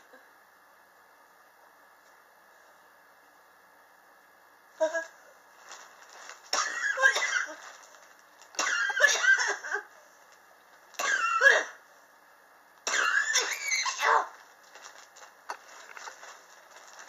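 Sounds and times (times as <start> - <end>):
person coughing: 6.5 - 7.6, 8.6 - 9.9, 11.0 - 11.8, 12.9 - 14.2.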